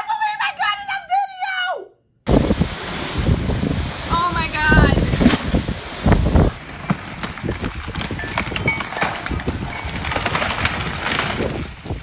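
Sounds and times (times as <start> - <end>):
storm wind gusting: 2.3 - 12.0
leaves and branches thrashing: 5.1 - 12.0.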